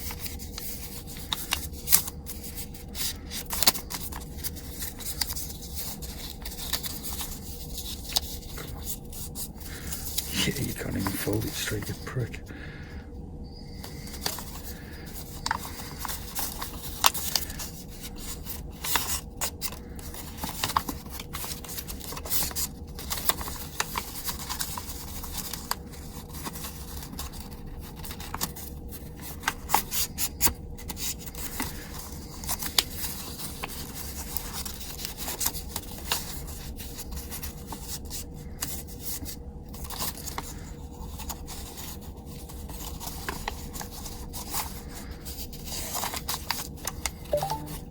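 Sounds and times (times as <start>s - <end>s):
paper being folded and creased: 0.0s - 10.2s, 14.3s - 47.0s
faint steady hum: 0.0s - 21.0s.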